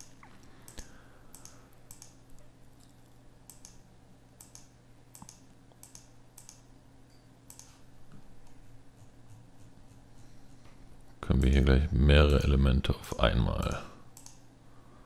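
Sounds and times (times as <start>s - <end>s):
computer mouse clicks: 0.0s - 2.4s, 3.4s - 3.8s, 4.4s - 6.7s, 7.4s - 7.8s, 14.1s - 14.4s
steady low hum: 0.0s - 15.0s.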